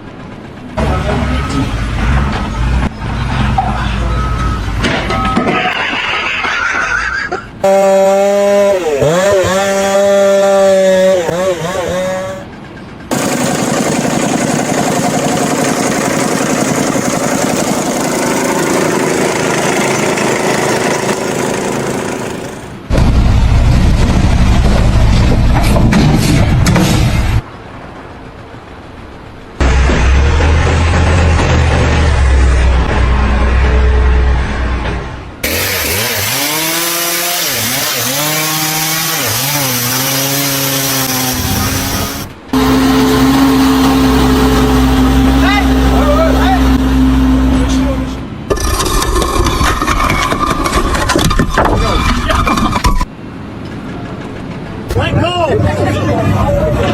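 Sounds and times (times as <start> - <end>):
engine running: 0.0 - 6.2, 11.0 - 56.9
small engine power tool: 13.1 - 22.8, 35.4 - 45.7.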